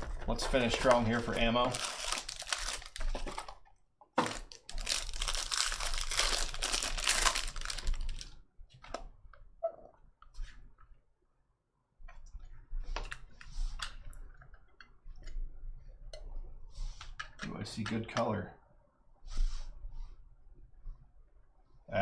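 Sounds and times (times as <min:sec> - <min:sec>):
foil packs tearing and crinkling: 0:00.0 - 0:03.6, 0:04.2 - 0:08.3.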